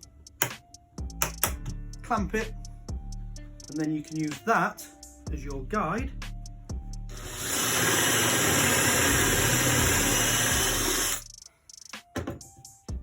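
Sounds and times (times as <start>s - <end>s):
drill bit cutting through wood: 7.1s - 11.2s
power drill whining: 7.1s - 11.2s.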